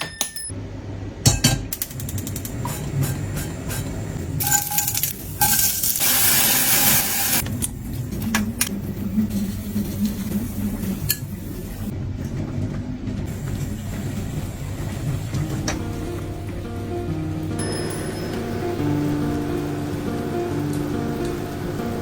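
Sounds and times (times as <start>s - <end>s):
utensils and dishes clinking: 1.3s - 6.4s.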